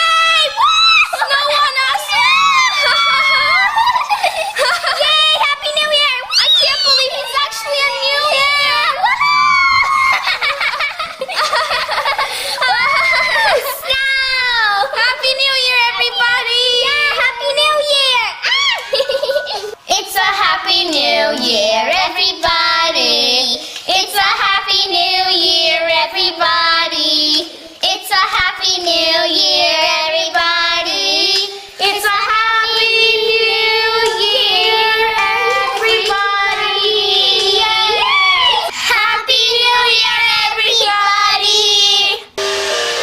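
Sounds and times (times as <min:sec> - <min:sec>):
child singing: 0:04.6 - 0:09.0, 0:13.6 - 0:18.4, 0:19.8 - 0:42.3.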